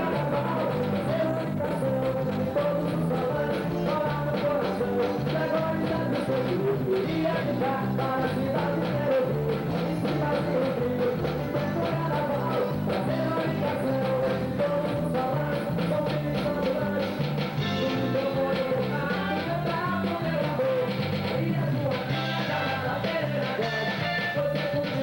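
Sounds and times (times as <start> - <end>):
band playing music: 0.0 - 25.0
drums: 0.0 - 25.0
repeating bass line: 0.0 - 25.0.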